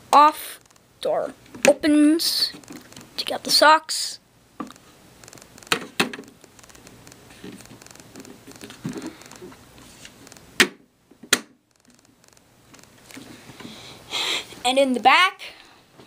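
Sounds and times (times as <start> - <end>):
sharp clicks: 0.5 - 0.9, 4.6 - 9.4, 11.6 - 13.2
plastic toy rustling and bumping: 2.4 - 3.6, 4.6 - 13.8.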